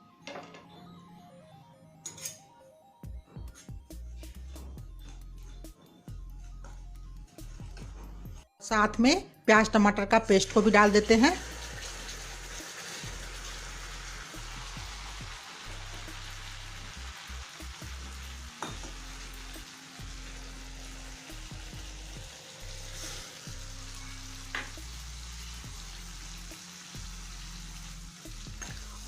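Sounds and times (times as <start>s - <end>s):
paste sizzling in oil: 10.8s - 29.0s.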